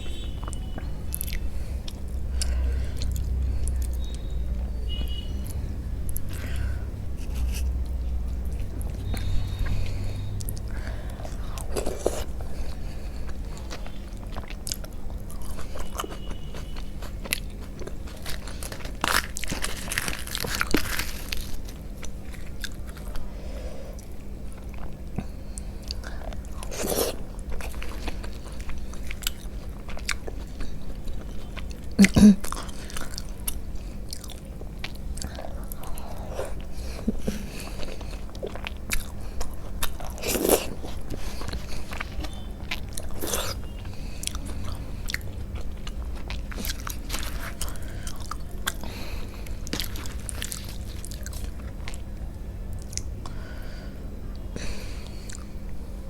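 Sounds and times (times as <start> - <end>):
steady low hum: 0.0 - 56.0
person chewing food: 0.1 - 53.6, 54.3 - 55.8.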